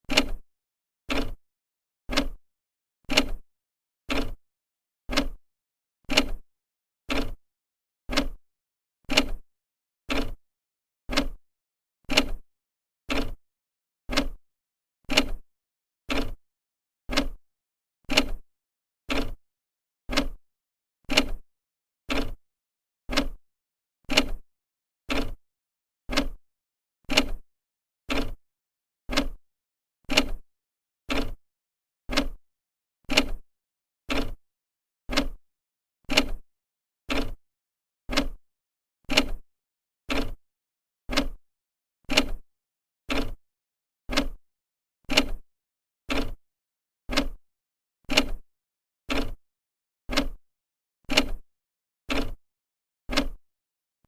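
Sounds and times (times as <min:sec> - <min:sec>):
clock ticking: 0:35.1 - 0:35.4, 0:38.1 - 0:38.4, 0:41.1 - 0:41.4, 0:44.1 - 0:44.4, 0:46.1 - 0:46.4, 0:47.1 - 0:47.4, 0:50.1 - 0:50.4, 0:52.1 - 0:52.4, 0:53.1 - 0:53.4.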